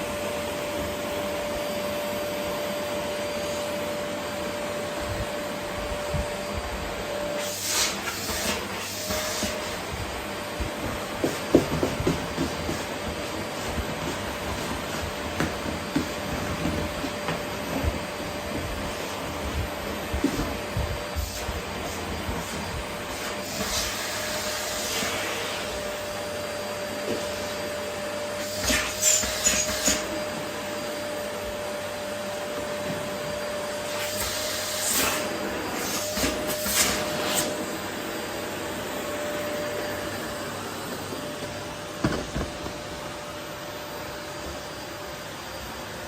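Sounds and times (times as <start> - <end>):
vacuum cleaner running: 0.0 - 46.0.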